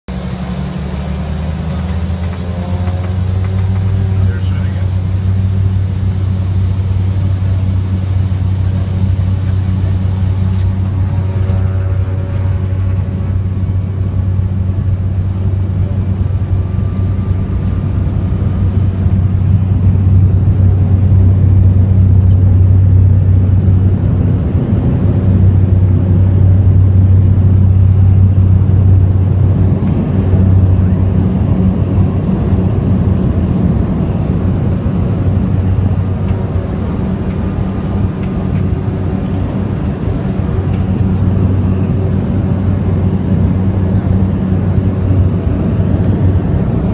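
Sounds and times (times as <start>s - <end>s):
airliner engines droning: 0.1s - 46.9s
high engine whine: 0.1s - 46.9s.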